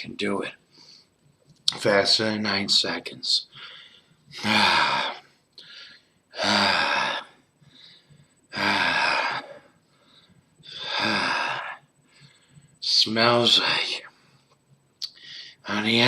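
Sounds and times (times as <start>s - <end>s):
man breathing raspily: 3.5s - 12.8s, 14.0s - 15.7s.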